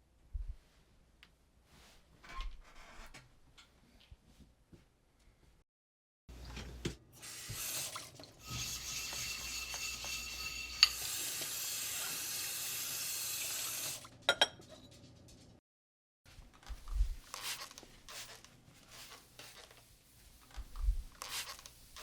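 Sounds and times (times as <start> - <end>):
tap water running into sink: 7.2 - 14.1.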